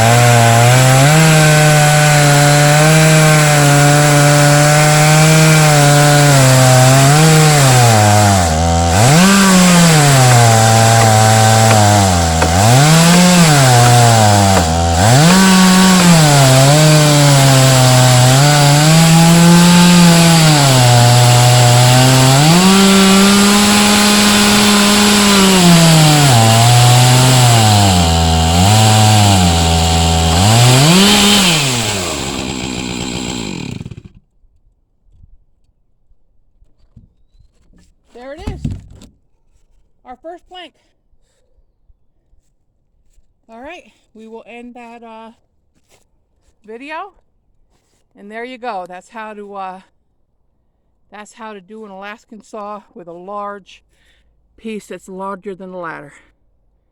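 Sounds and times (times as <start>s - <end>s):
chainsaw cutting through log: 0.0s - 34.2s.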